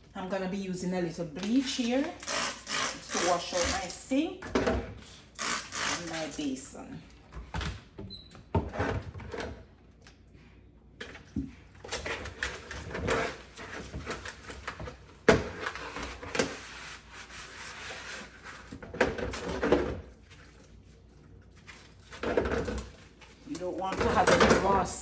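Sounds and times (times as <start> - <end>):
sink being scrubbed and clattering: 11.0 - 25.0.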